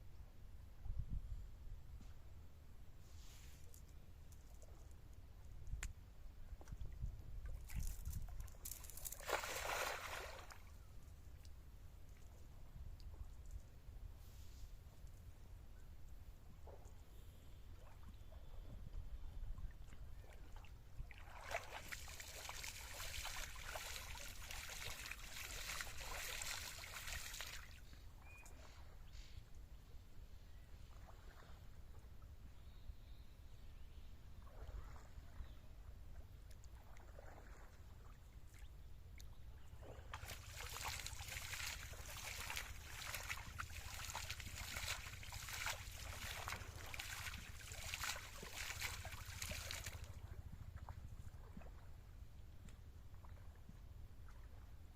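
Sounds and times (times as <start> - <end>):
water sloshing and splashing: 6.6 - 10.7, 19.6 - 28.0, 36.5 - 38.6, 39.8 - 52.0.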